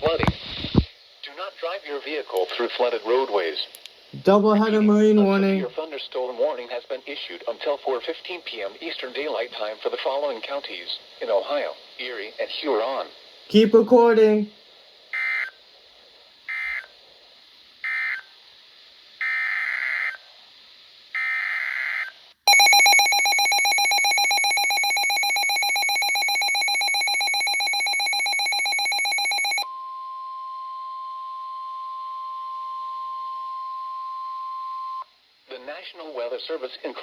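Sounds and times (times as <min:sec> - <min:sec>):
pulsing electronic alarm tone: 0:21.2 - 0:29.8
steady warning alarm tone: 0:22.5 - 0:29.7.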